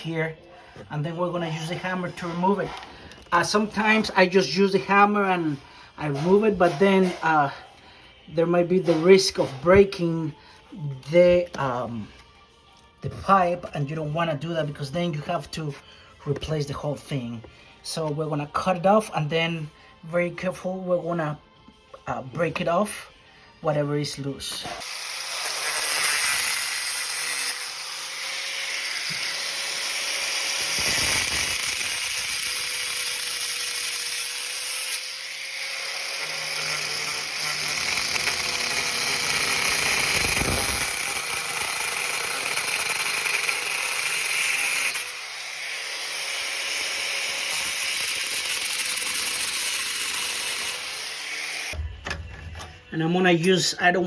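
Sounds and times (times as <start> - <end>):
power cutting tool cutting floor: 24.6 - 51.8.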